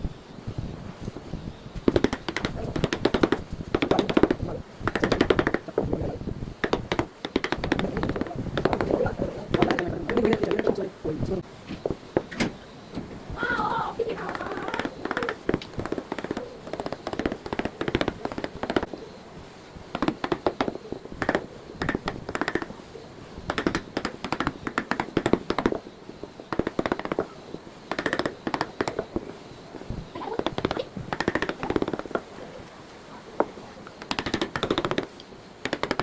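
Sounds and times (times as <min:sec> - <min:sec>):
hand tools tapping and scraping wood: 0:01.8 - 0:05.9, 0:06.6 - 0:10.8, 0:14.2 - 0:19.0, 0:19.9 - 0:22.8, 0:23.5 - 0:29.8, 0:30.4 - 0:32.7, 0:33.4 - 0:36.0.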